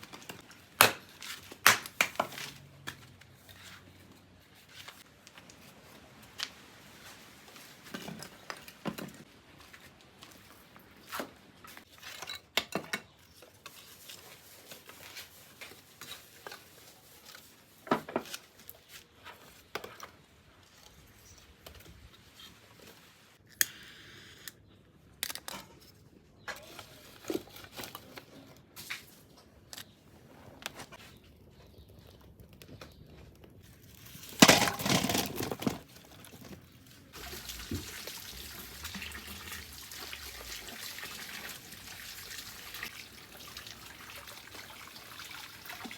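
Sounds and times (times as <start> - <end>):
water running: 37.2 - 45.9.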